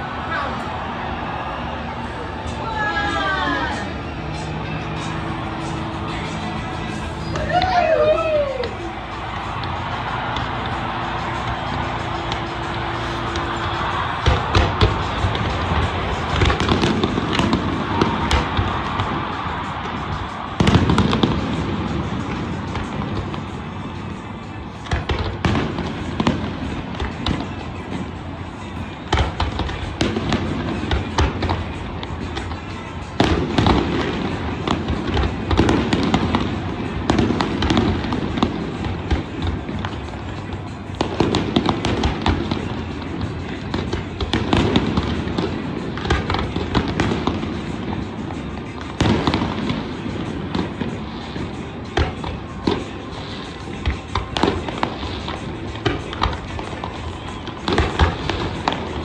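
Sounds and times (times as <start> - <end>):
background music: 0.0 - 59.0
crowd voices: 0.0 - 59.0
fireworks bangs and crackling: 0.0 - 59.0.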